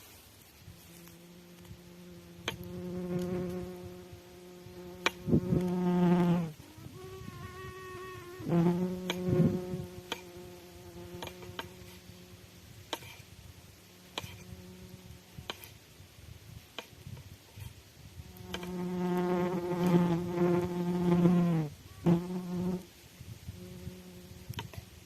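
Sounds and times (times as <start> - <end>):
fly buzzing: 0.6 - 15.8, 17.6 - 22.9, 23.5 - 24.8.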